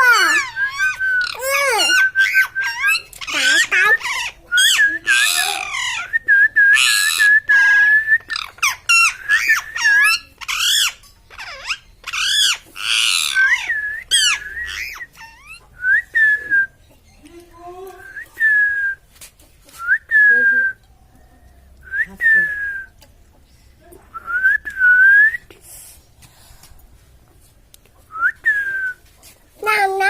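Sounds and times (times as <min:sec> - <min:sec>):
parrot whistling and calling: 0:00.0 - 0:17.0.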